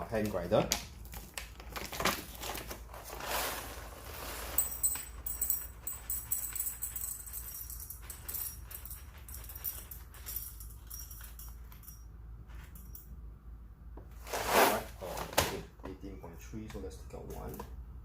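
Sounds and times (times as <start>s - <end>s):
coffee beans rattling in container: 3.1s - 11.8s.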